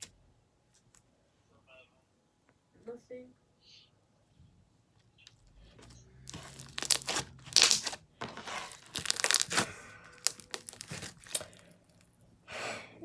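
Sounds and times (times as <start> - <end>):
slime crackling squeezed by hand: 6.3 - 12.1.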